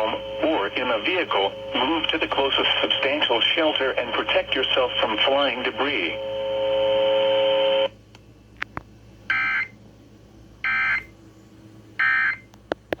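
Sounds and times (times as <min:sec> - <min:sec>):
steady held tone: 0:00.0 - 0:07.5.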